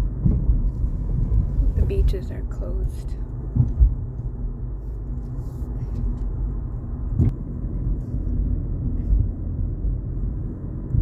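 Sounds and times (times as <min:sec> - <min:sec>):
car road noise rumble: 0:00.0 - 0:11.0.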